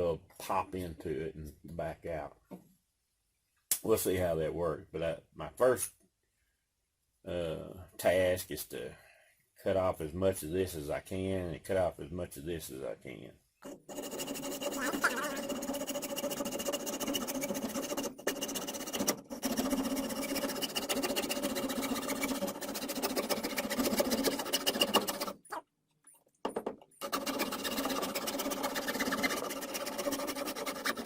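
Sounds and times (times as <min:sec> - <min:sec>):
power saw cutting: 0:13.6 - 0:25.4, 0:27.0 - 0:31.0.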